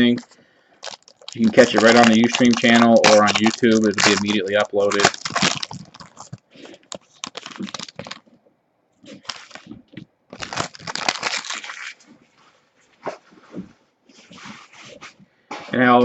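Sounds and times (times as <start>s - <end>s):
card packaging torn open crinkling: 0.0s - 8.3s, 9.2s - 9.7s, 10.3s - 12.0s.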